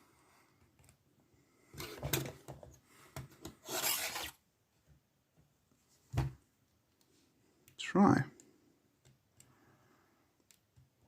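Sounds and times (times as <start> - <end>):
padlock scraping and rubbing: 3.6 - 4.4.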